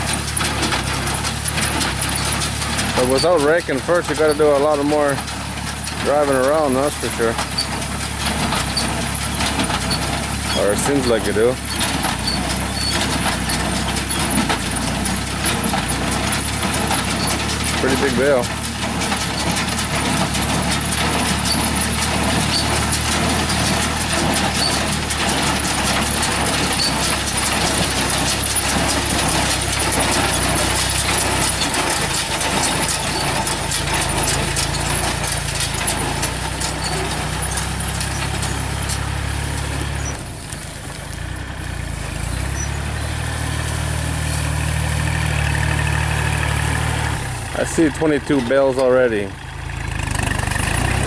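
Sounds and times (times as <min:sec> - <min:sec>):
baler mechanical clatter: 0:00.0 - 0:51.0
tractor engine running: 0:00.0 - 0:51.0.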